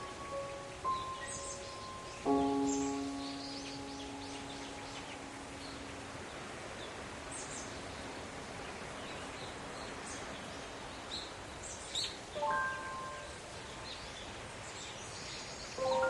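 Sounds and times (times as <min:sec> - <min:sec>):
high bird chirps: 0:00.0 - 0:05.9, 0:12.4 - 0:14.0, 0:15.7 - 0:16.0
steady rushing hiss: 0:00.0 - 0:16.0.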